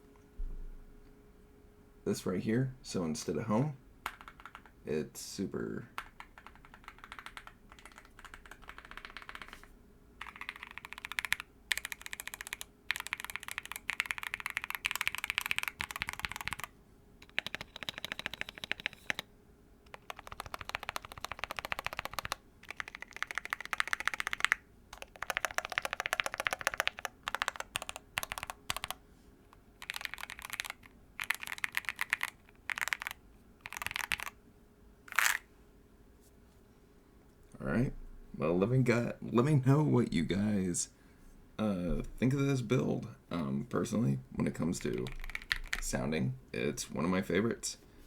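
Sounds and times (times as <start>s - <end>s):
mechanical keyboard clacking: 4.0s - 4.7s, 6.0s - 9.6s, 10.2s - 19.3s, 19.9s - 29.0s, 29.8s - 34.4s, 44.8s - 45.9s.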